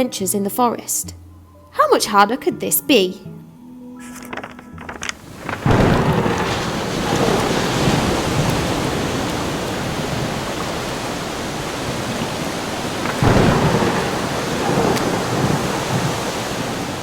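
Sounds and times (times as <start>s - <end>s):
heavy rain: 4.4s - 17.0s
thunder rumbling: 5.1s - 17.0s
thunderclap: 5.1s - 17.0s.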